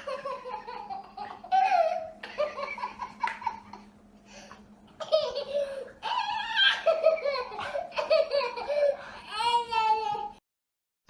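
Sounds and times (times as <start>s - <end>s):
small child laughing: 0.0s - 3.9s, 5.0s - 10.4s.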